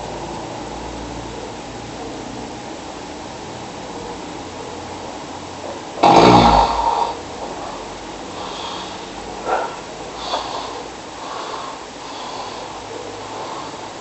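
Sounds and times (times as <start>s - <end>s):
person snoring: 6.0s - 14.0s
short snort: 8.4s - 10.8s.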